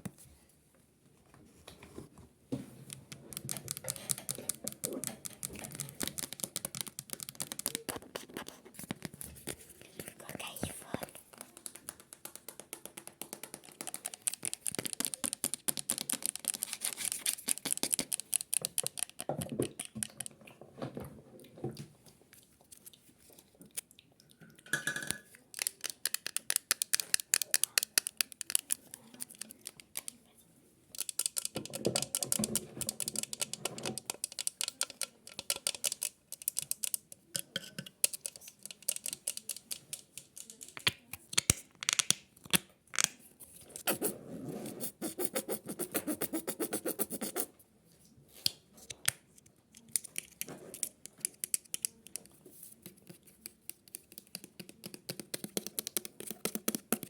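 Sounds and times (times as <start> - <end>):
rapid tapping and scratching clicks: 3.0 - 9.2, 10.3 - 20.4, 31.0 - 40.9.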